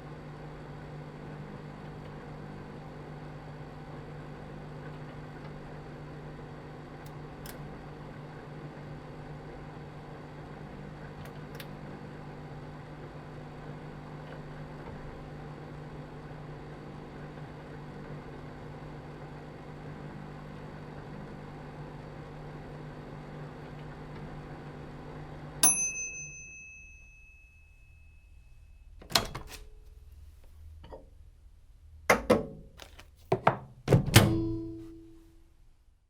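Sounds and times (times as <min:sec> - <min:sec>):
microwave oven humming: 0:00.0 - 0:33.0, 0:33.8 - 0:36.0
bell-like ding: 0:25.6 - 0:28.8.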